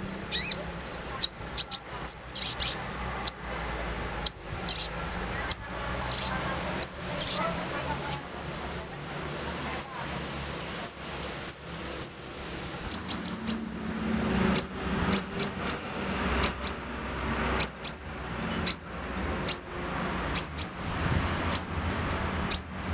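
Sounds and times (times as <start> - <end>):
bird chirping: 0.0 - 3.6, 4.2 - 9.0, 9.8 - 10.0, 10.8 - 12.2, 12.8 - 13.7, 14.6 - 16.9, 17.6 - 18.0, 18.6 - 20.8, 21.4 - 21.8, 22.5 - 22.8.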